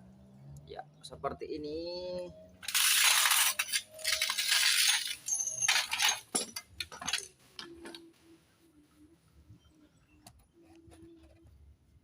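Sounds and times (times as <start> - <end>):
metal parts clinking: 2.6 - 8.0.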